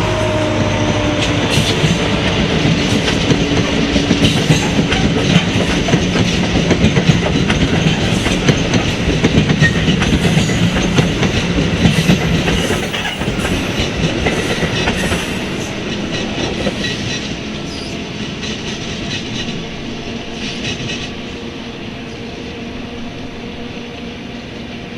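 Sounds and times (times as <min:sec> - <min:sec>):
low train engine tone: 0:00.0 - 0:24.9
train wheels clicking over rail joints: 0:01.2 - 0:19.7.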